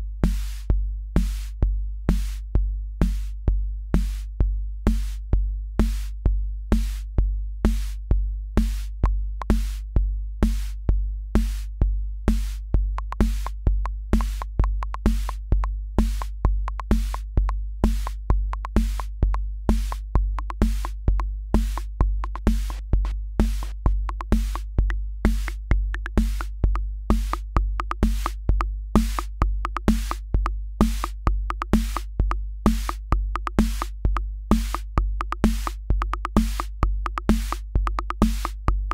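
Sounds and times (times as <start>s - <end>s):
booming kick drum: 0.2s - 38.9s
hi-hat ticks: 8.6s - 9.8s, 12.3s - 38.9s
higher pitched drum machine part: 13.0s - 13.5s, 14.2s - 38.9s.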